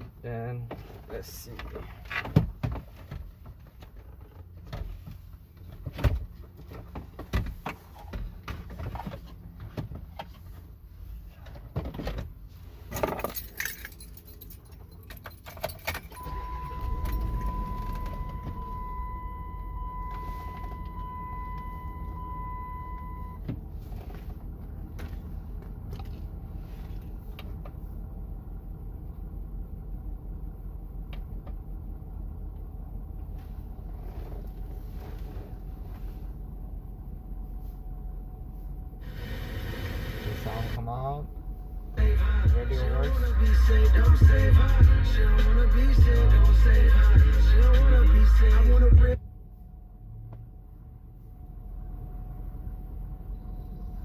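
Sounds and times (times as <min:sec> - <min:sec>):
car engine idling: 0:12.3 - 0:54.0
keys jangling: 0:12.9 - 0:16.2
steady high beep: 0:16.2 - 0:23.4.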